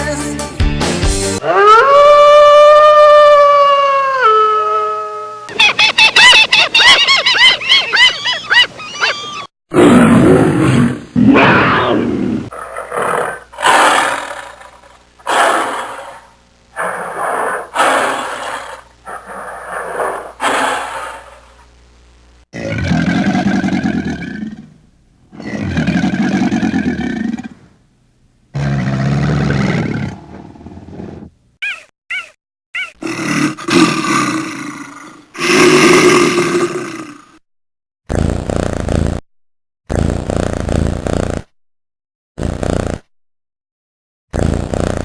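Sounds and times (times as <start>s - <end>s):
long low animal call: 1.4s - 9.5s
loud harsh animal call: 1.4s - 16.2s, 31.6s - 34.7s
animal calling roughly: 5.5s - 9.5s, 31.6s - 33.7s.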